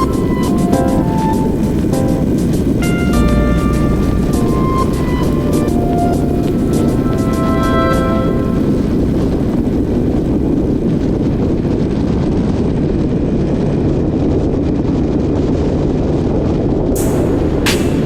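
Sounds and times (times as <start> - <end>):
road noise: 0.0 - 11.6
wind rushing on microphone: 0.0 - 18.0.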